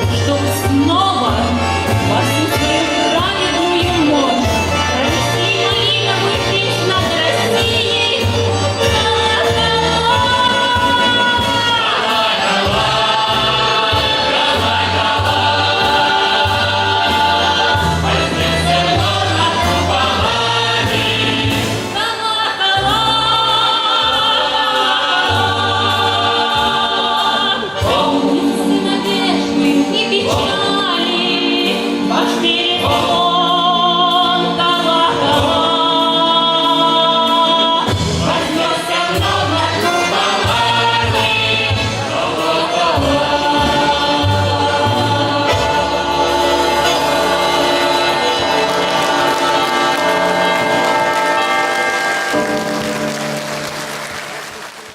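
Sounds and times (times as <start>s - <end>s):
choir singing: 0.0s - 52.8s.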